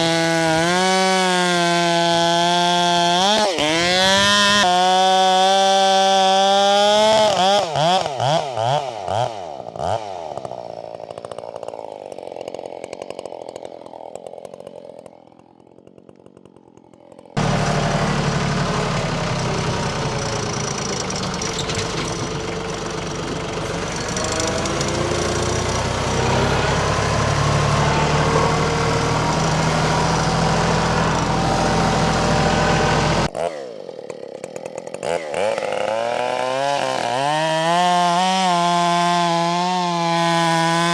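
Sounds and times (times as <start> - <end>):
chainsaw revving: 0.0 - 40.9
loud deep engine sound: 17.4 - 33.3.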